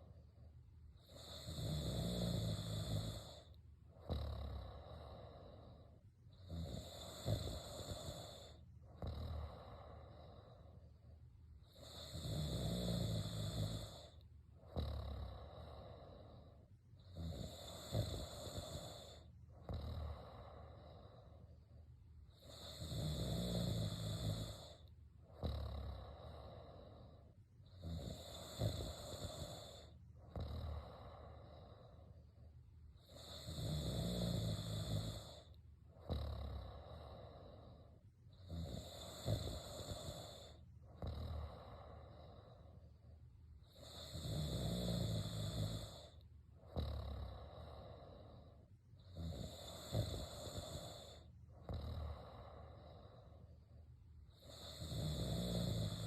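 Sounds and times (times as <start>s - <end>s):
quiet breathing: 0.0s - 56.0s
person snoring: 1.0s - 11.0s, 11.6s - 21.6s, 22.3s - 32.2s, 33.0s - 53.6s, 54.3s - 56.0s.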